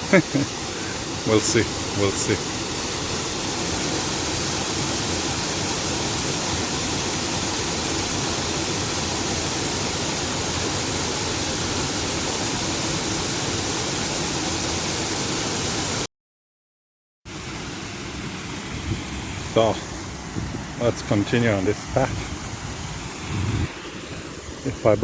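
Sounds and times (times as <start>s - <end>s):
water rushing over waterfall: 0.0s - 16.1s, 17.3s - 25.0s.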